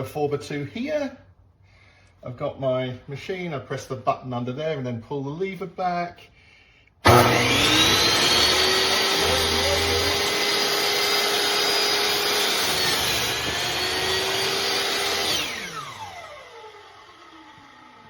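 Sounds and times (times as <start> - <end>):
miter saw motor whining: 7.0 - 18.0.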